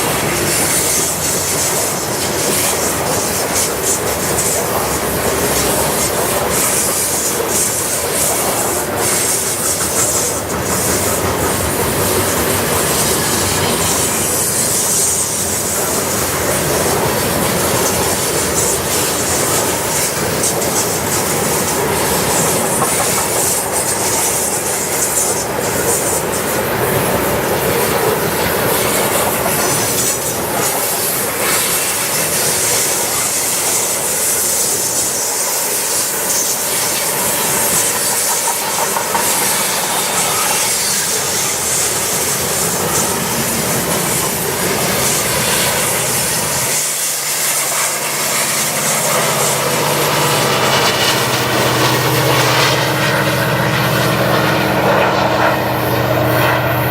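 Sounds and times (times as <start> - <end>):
train wheels clacking over rail joints: 0.0 - 56.9
wheel squeal and hiss: 0.0 - 56.9
low engine drone: 47.8 - 56.9.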